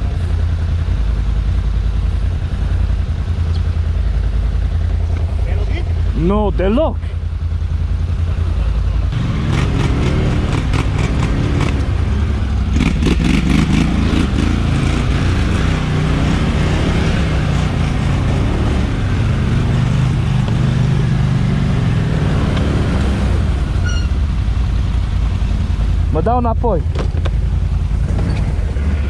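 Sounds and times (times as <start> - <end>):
atv engine revving: 0.0 - 29.0.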